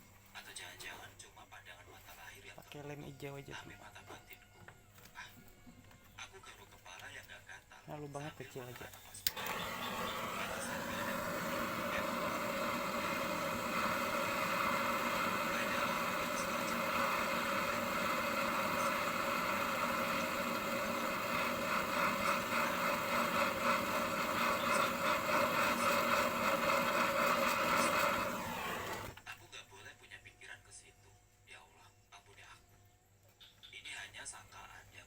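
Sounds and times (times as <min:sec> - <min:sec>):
small electric tool whining: 0:08.8 - 0:29.3.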